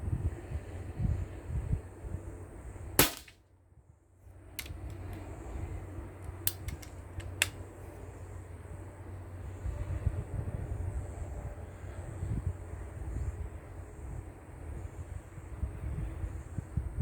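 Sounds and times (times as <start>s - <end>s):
air rifle shot crack: 3.0s - 3.4s
light clicks: 4.6s - 5.2s, 6.2s - 7.6s.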